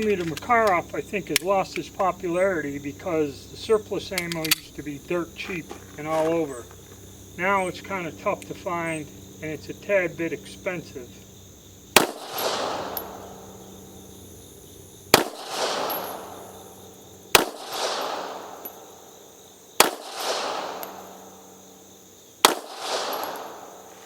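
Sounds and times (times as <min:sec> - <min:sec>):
pistol shots with echo: 0:11.9 - 0:14.2, 0:15.1 - 0:19.1, 0:19.8 - 0:21.6, 0:22.4 - 0:23.9.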